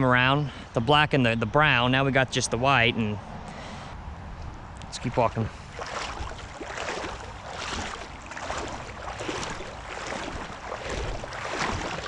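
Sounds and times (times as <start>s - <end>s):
legs sloshing through water: 5.1s - 12.0s.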